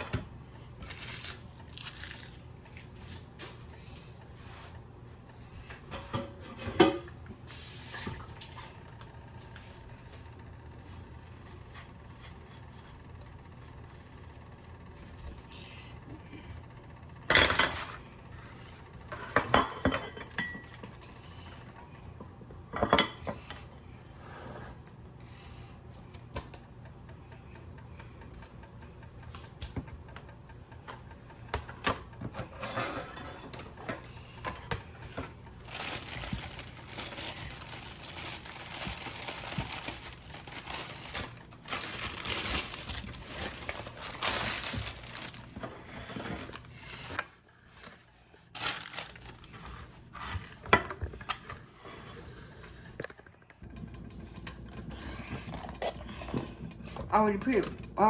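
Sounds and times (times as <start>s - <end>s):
pots and pans clattering: 5.9s - 7.2s, 19.1s - 21.0s, 31.6s - 46.7s.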